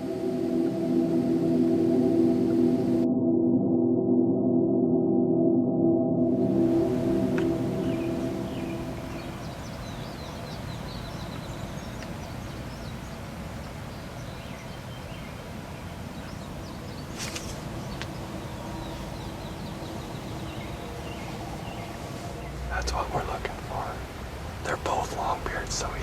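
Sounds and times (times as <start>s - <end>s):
wind rumble: 5.4s - 26.0s
songbirds chirping and trilling: 6.3s - 26.0s.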